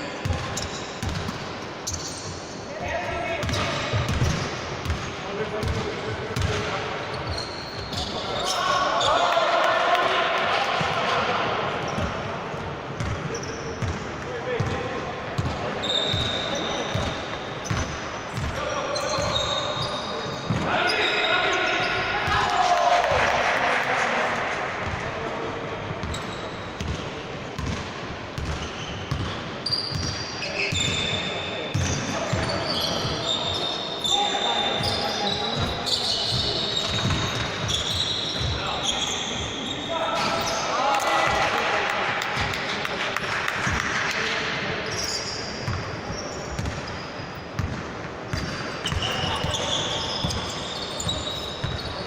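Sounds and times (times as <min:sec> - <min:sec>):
game noise in large hall: 0:00.0 - 0:52.0
shoe squeaks: 0:00.2 - 0:01.2, 0:01.8 - 0:02.7, 0:06.4 - 0:09.2, 0:13.2 - 0:13.9, 0:15.8 - 0:22.2, 0:26.0 - 0:26.8, 0:28.4 - 0:40.8, 0:44.8 - 0:47.6, 0:48.3 - 0:52.0
basketball bouncing: 0:26.8 - 0:30.1, 0:46.6 - 0:46.9.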